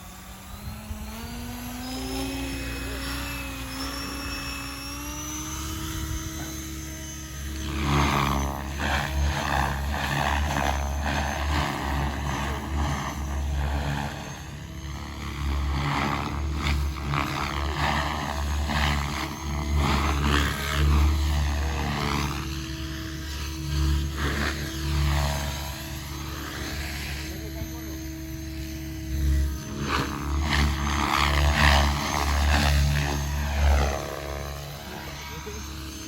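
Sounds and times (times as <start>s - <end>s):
pulsing rotor blade noise: 0.0s - 36.0s
rc helicopter motor whine: 0.0s - 36.0s.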